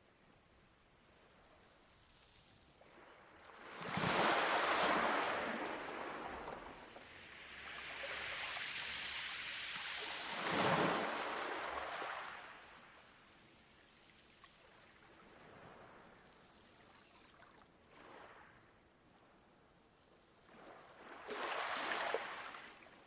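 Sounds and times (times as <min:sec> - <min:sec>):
waves washing onto pebble beach: 0:07.6 - 0:12.5.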